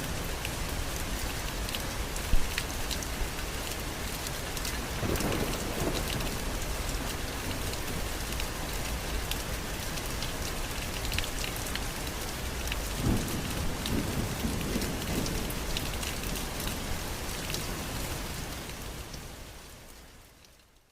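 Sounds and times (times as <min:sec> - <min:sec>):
steady rain falling: 0:00.0 - 0:20.9
low rumble of thunder: 0:04.8 - 0:08.2, 0:12.9 - 0:18.0.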